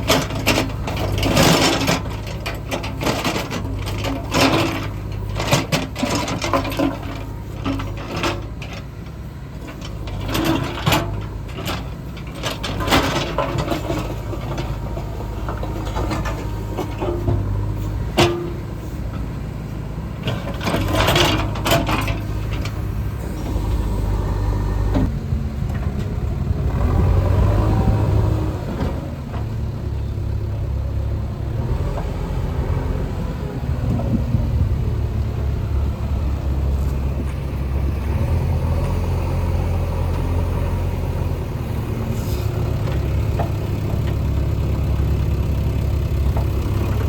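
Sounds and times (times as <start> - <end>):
metal clanks and knocks: 0.0 - 19.3, 20.2 - 22.9
diesel machinery running: 0.0 - 47.0.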